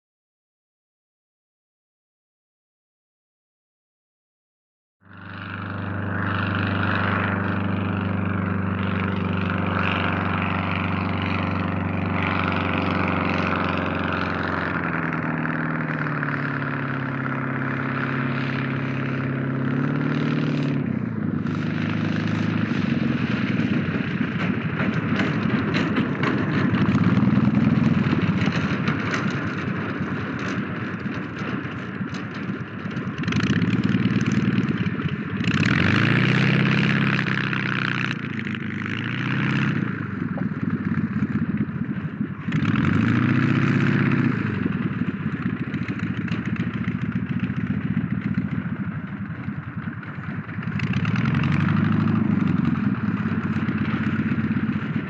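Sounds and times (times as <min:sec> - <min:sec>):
propeller plane engine: 0:05.0 - 0:55.0.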